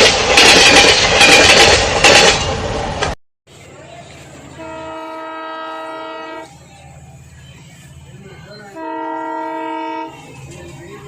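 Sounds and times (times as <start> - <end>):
train horn blasts: 4.5 - 6.6, 8.6 - 10.5.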